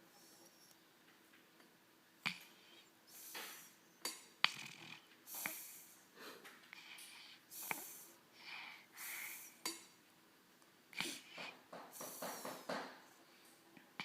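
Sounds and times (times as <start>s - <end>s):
soft wheezy snoring: 2.2s - 9.6s.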